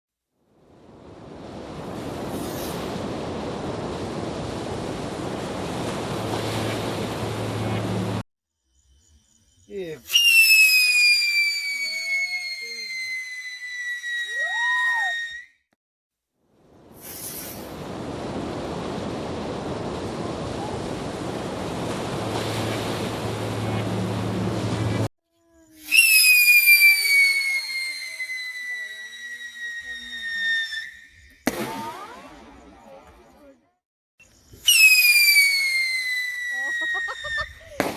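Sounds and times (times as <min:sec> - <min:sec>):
firework hissing crackle: 0:01.2 - 0:08.2, 0:10.1 - 0:14.7, 0:16.8 - 0:25.0, 0:25.7 - 0:33.0, 0:34.4 - 0:37.9
firework hissing sparks: 0:01.8 - 0:03.4, 0:17.0 - 0:20.1, 0:25.8 - 0:32.2
low hum: 0:05.9 - 0:08.2, 0:21.5 - 0:25.1.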